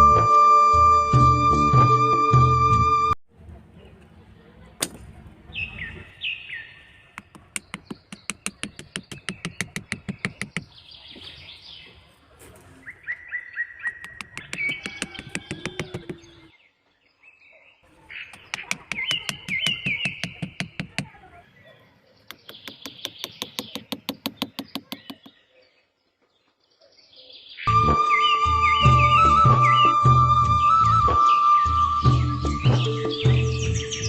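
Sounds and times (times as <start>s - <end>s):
small birds chirping: 3.6s - 29.0s, 31.2s - 34.0s
sharp rapid clicks: 7.2s - 10.7s, 14.0s - 16.1s, 22.3s - 25.3s.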